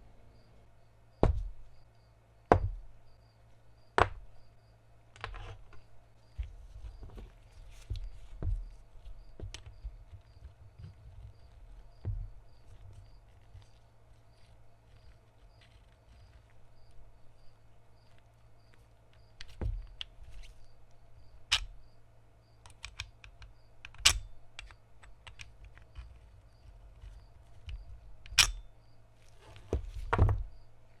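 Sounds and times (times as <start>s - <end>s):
pistol action snapping: 21.5s - 21.7s, 22.6s - 25.9s, 28.2s - 28.7s
pistol action clicking: 22.6s - 25.9s, 28.3s - 28.7s.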